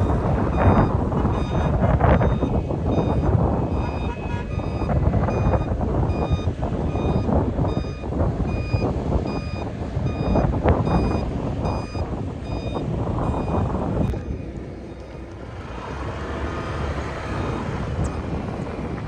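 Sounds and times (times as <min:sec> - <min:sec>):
reversing alarm beeping: 0:00.0 - 0:15.1
heavy diesel engine running: 0:00.0 - 0:19.0.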